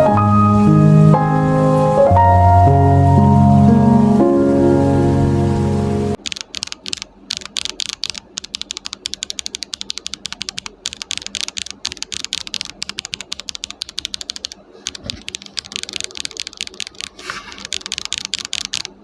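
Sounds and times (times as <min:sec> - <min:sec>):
fast mechanical keyboard typing: 0:06.2 - 0:19.0.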